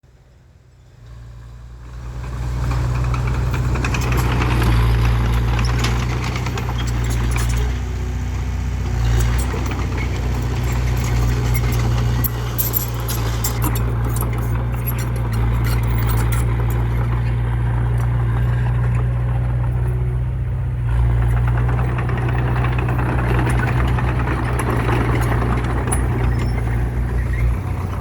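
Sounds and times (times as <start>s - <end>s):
heavy diesel engine running: 0.4s - 28.0s
short clicks and rattles: 9.2s - 19.0s.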